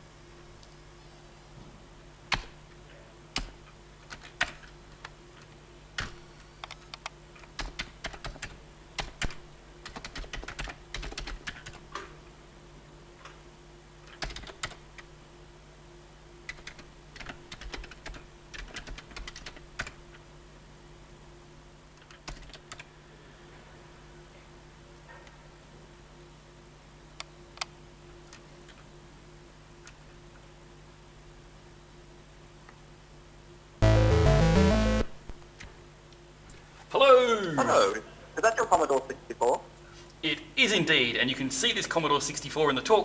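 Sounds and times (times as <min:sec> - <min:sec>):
faint steady hum: 0:00.0 - 0:43.0
typing on a keyboard: 0:03.4 - 0:05.1, 0:06.0 - 0:11.8, 0:14.1 - 0:15.1, 0:16.5 - 0:20.0, 0:22.0 - 0:22.9.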